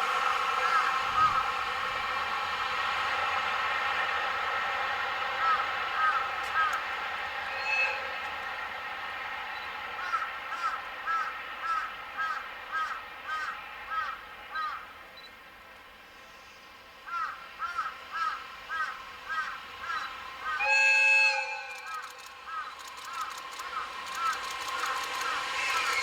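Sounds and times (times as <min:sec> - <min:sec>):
crow cawing: 0:05.4 - 0:06.8, 0:10.0 - 0:14.8, 0:17.1 - 0:20.6.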